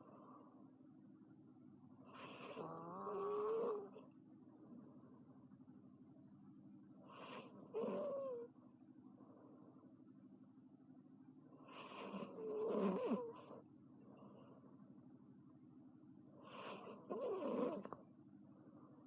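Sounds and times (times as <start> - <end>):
girl snoring loudly: 2.2 - 3.9, 7.2 - 8.5, 11.7 - 13.4, 16.5 - 18.0.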